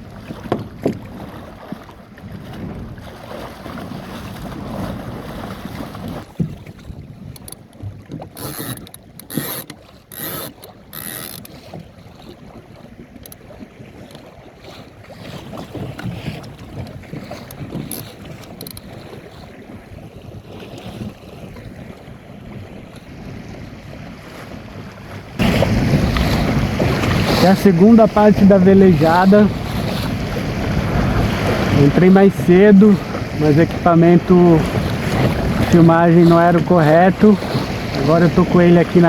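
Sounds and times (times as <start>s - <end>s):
wind on microphone: 0.0s - 7.6s, 15.3s - 39.0s
water along a hull: 0.0s - 39.0s.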